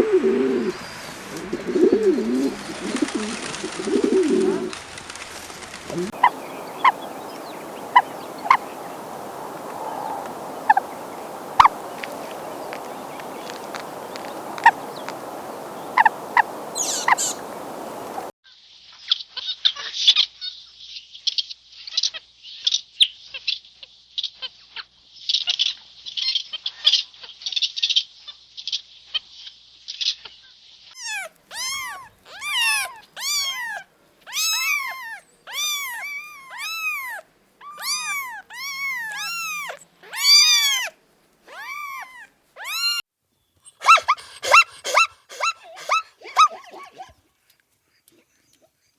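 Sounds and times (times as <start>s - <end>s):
animal chirping: 6.1s - 18.3s, 31.0s - 40.9s, 41.5s - 43.0s
short high animal cries: 15.9s - 17.4s, 31.0s - 40.9s, 41.5s - 43.0s.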